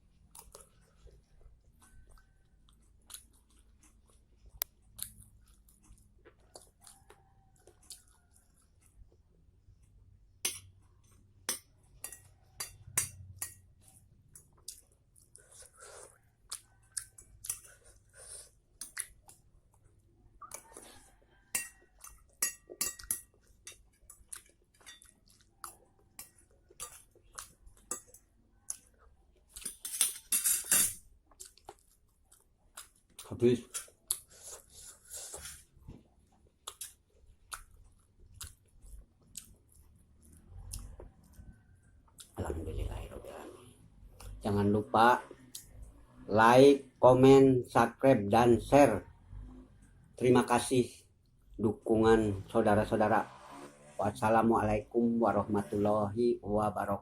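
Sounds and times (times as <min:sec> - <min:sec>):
person chewing noodles: 0:00.0 - 0:12.6, 0:13.5 - 0:29.8, 0:31.1 - 0:43.5
cutlery clinking on dish: 0:11.5 - 0:13.6, 0:21.5 - 0:23.9, 0:29.6 - 0:31.0.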